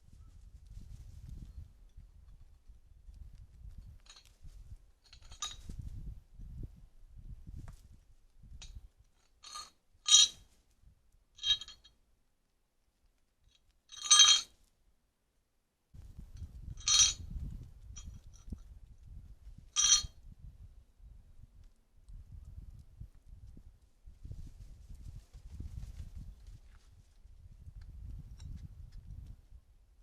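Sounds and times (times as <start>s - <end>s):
sharp ringing clinks: 19.8s - 20.1s.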